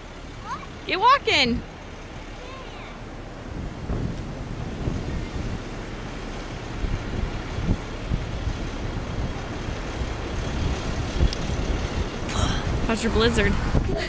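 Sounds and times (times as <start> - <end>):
bus engine idling: 0.0 - 14.0
wind buffeting microphone: 3.4 - 14.0.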